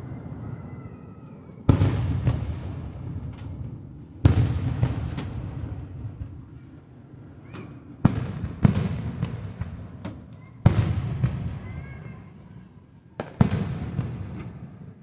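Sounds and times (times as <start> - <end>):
fireworks bangs: 1.7 - 6.4, 7.4 - 12.3, 13.2 - 15.0.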